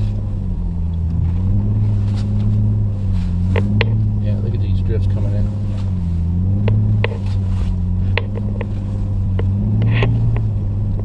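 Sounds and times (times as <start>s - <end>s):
car engine pulling through snow: 0.0s - 11.0s
sharp clicks and knocks: 3.5s - 4.0s, 6.6s - 7.4s, 8.0s - 11.0s.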